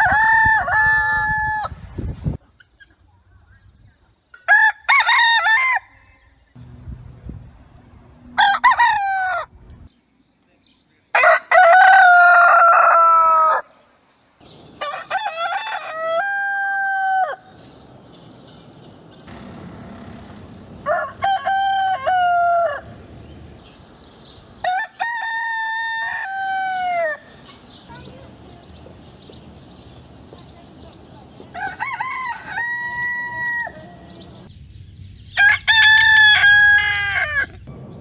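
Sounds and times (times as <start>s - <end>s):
roosters crowing: 0.0s - 1.8s, 4.4s - 6.4s, 8.3s - 9.6s, 11.1s - 13.8s, 14.4s - 27.5s, 31.2s - 34.5s, 35.4s - 37.7s.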